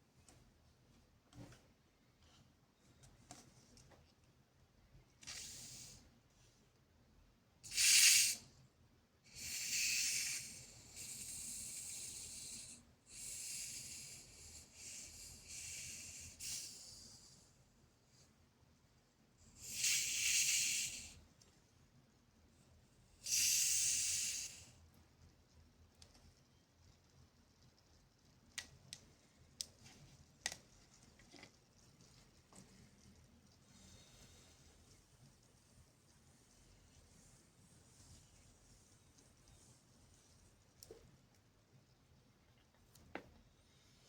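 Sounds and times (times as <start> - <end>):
short airy hisses: 7.7 - 8.5, 9.4 - 17.2, 19.6 - 21.2, 23.2 - 24.8.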